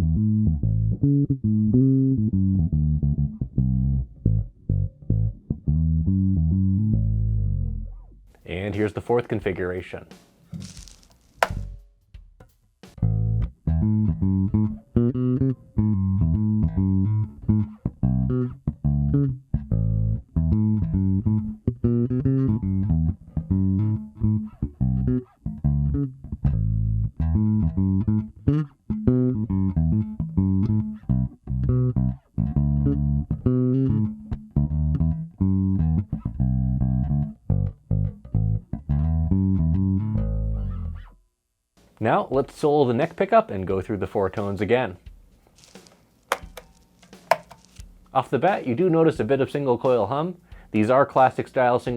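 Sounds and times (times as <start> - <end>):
electric bass plucked notes: 0.0 - 8.7, 13.0 - 41.2.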